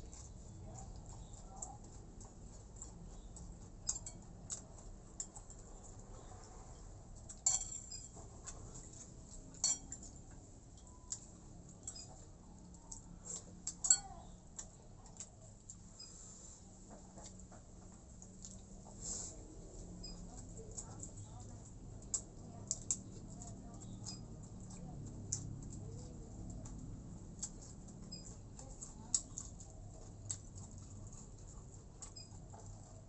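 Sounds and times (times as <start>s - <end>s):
person chewing and smacking: 0.0s - 16.2s, 16.8s - 33.0s
tableware clinks: 7.5s - 8.1s, 9.6s - 9.9s.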